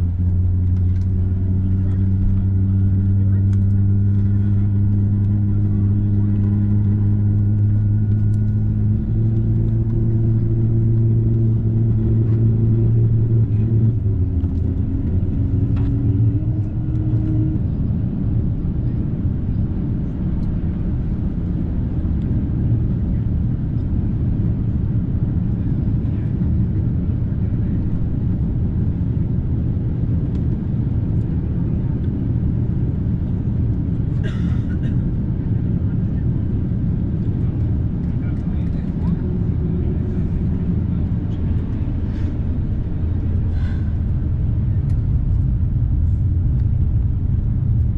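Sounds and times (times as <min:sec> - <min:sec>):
aircraft cabin drone: 0:00.0 - 0:47.9.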